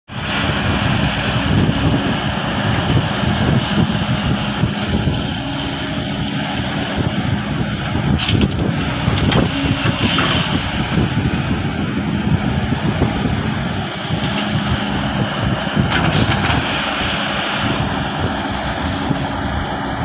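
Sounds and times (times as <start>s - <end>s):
excavator diesel engine running: 0.1s - 20.0s.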